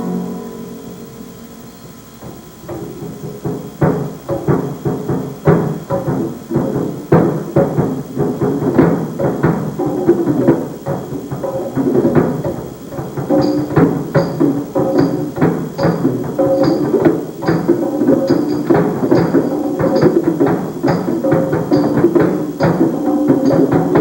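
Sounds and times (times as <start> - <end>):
drums in fast rhythm: 1.0 - 24.0
high ticking click: 8.0 - 24.0.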